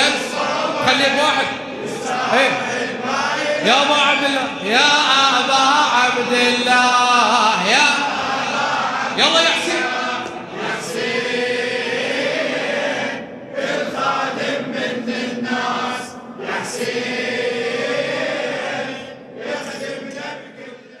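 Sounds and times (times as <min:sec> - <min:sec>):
men chanting a lament: 0:00.0 - 0:21.0.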